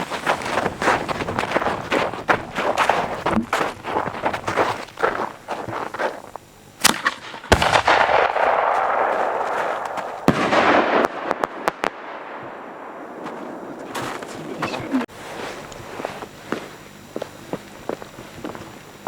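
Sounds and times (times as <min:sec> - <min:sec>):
small firework cracks: 0:06.8 - 0:13.4
firework bangs: 0:06.8 - 0:14.0.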